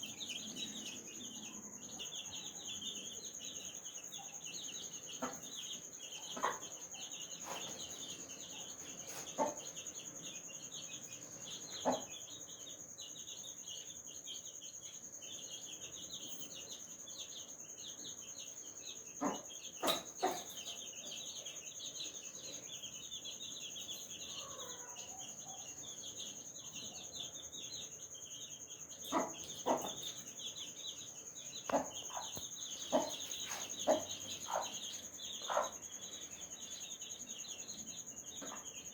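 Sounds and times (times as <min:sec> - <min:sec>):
baby chicks peeping: 0:00.0 - 0:38.9
high insect drone: 0:00.0 - 0:38.9
hen clucking: 0:29.1 - 0:30.0, 0:31.7 - 0:34.8.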